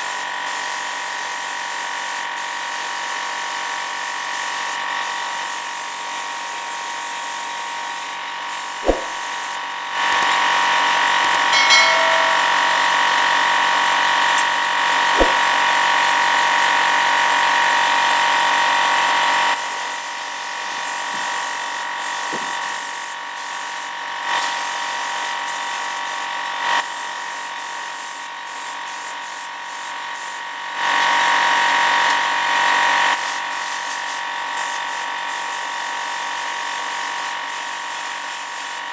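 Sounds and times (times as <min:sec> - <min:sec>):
sharp knocks: 0:08.8 - 0:09.2, 0:11.3 - 0:13.0, 0:15.2 - 0:15.4.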